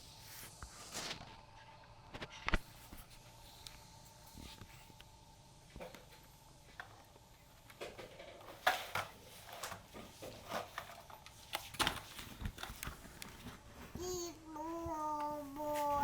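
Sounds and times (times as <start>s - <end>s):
clicks and knocks of plastic objects: 7.7s - 13.7s.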